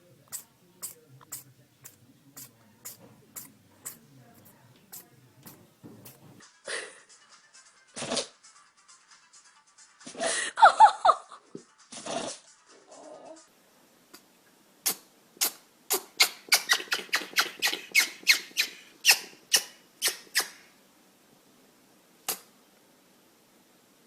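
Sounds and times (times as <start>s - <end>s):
animal sneezing: 0.3s - 6.4s, 14.8s - 20.6s.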